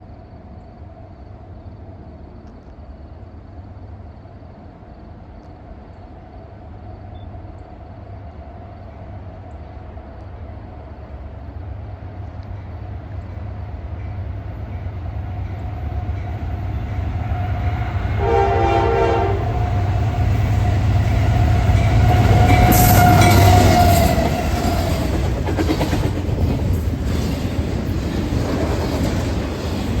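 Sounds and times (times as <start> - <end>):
diesel locomotive rumble: 0.4 - 30.0
locomotive air horn: 18.1 - 20.0, 22.2 - 24.6
train wheel clatter: 19.2 - 30.0.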